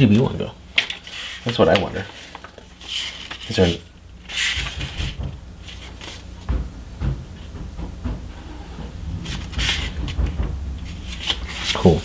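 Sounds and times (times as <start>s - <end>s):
rustle of handled cables: 0.0s - 6.4s
dull knocks: 3.2s - 12.0s.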